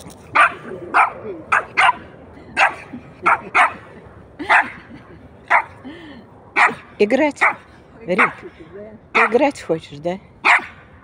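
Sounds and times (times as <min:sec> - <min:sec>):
dog barking: 0:00.4 - 0:02.0, 0:02.6 - 0:03.8, 0:06.6 - 0:06.8, 0:07.4 - 0:07.6, 0:08.2 - 0:08.4, 0:09.2 - 0:09.4, 0:10.4 - 0:10.8.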